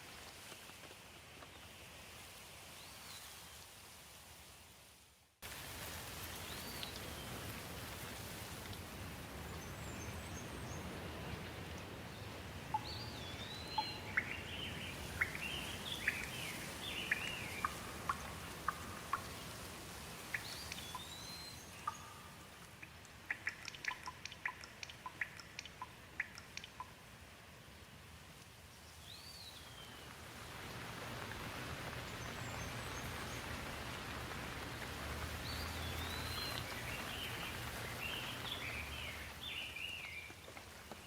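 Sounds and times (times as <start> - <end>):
rain falling on leaves: 0.0 - 41.0
water drops ticking: 12.7 - 16.4, 17.0 - 19.4, 20.3 - 27.0
birds chirping: 12.7 - 19.3, 35.4 - 40.3.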